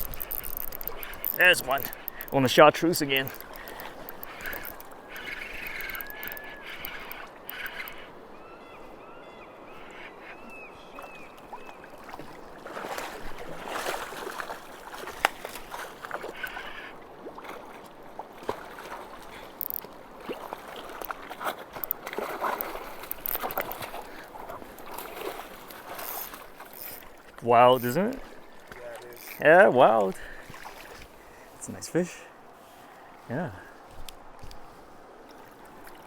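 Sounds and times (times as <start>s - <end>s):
sharp clicks: 0.0s - 8.0s, 19.6s - 19.9s
water sloshing and splashing: 0.0s - 9.0s, 9.6s - 36.0s.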